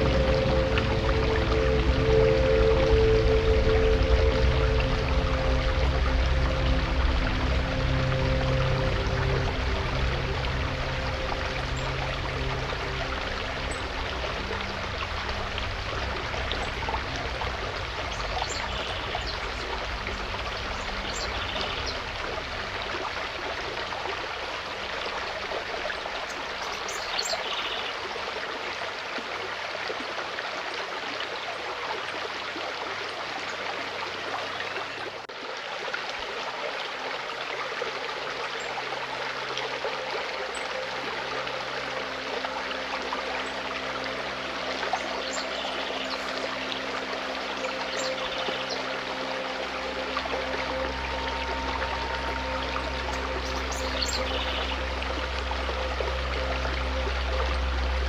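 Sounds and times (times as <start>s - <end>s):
soft background music: 0.0s - 35.0s, 37.1s - 58.0s
stream flowing over stones: 0.0s - 58.0s.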